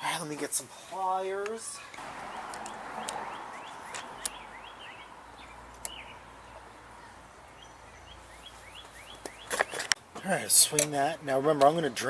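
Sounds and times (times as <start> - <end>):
small birds chirping: 0.9 - 12.0
sharp clicks: 2.4 - 3.2, 3.8 - 4.4.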